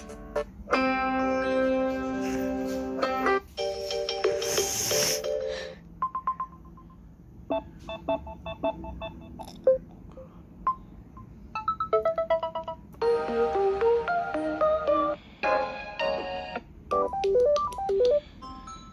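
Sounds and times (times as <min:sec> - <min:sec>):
fuller tune with held notes: 0:00.0 - 0:05.7
electronic ringtone tunes: 0:03.6 - 0:09.8, 0:10.6 - 0:18.9.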